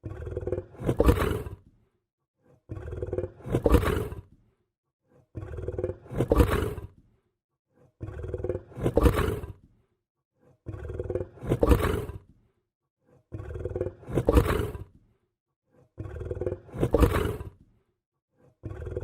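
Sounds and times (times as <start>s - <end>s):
lion growling: 0.0s - 1.8s, 2.4s - 7.2s, 7.8s - 9.8s, 10.4s - 15.1s, 15.7s - 19.0s.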